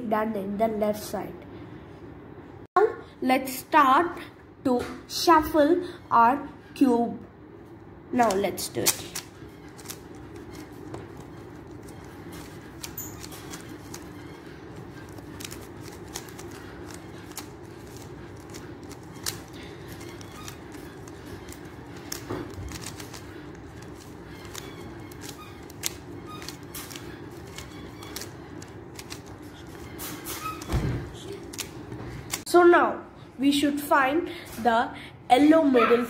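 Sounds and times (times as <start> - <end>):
puzzle cube clicking: 15.0 - 29.8.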